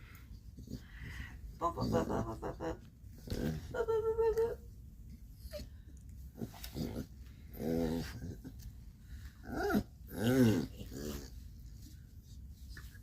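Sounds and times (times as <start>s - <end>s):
dog growling playfully: 1.6s - 3.9s, 6.3s - 8.6s, 9.4s - 11.5s.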